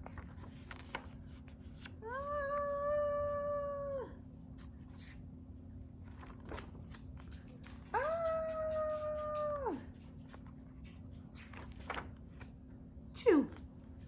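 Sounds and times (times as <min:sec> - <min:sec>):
faint ticks and rustles: 0:06.2 - 0:12.6.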